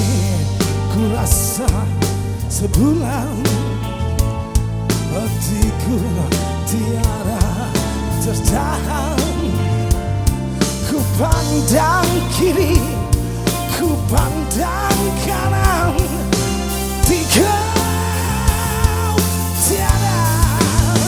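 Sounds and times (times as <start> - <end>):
man singing: 0.0 - 21.0
rock band playing live: 0.0 - 21.0.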